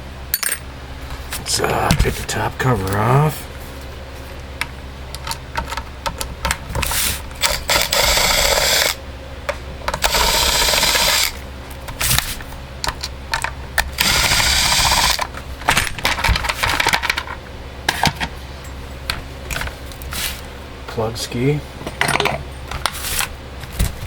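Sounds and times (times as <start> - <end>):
power driver running: 1.3 - 3.9, 4.5 - 18.4
clicks and knocks of handled parts: 4.6 - 6.9, 11.9 - 14.0, 15.2 - 18.4, 21.8 - 24.0.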